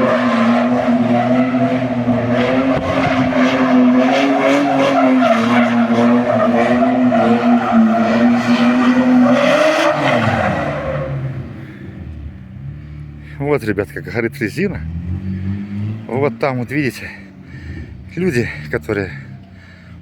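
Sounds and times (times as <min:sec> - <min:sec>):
tyres squealing: 0:00.0 - 0:11.2
car engine at high revs: 0:00.0 - 0:19.8.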